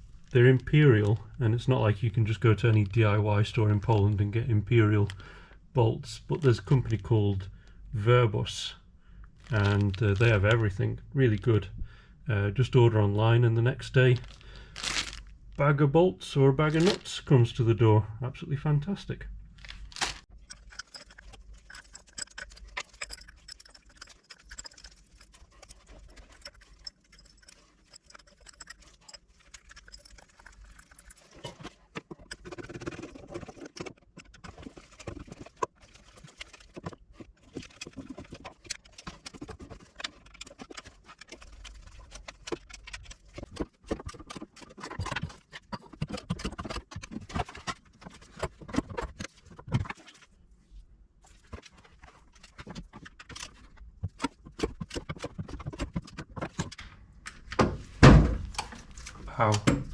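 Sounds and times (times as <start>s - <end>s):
clinks of hand tools and bolts: 20.3s - 32.4s.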